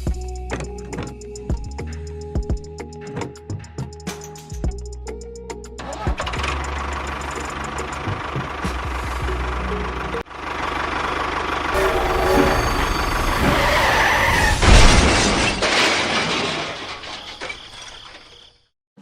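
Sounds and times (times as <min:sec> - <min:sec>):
small engine running roughly: 0:10.3 - 0:13.5
loud crash: 0:11.8 - 0:18.3.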